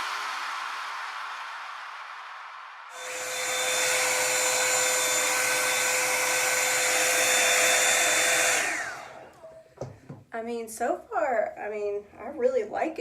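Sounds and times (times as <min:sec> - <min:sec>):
hair dryer blowing air: 0:02.9 - 0:10.2.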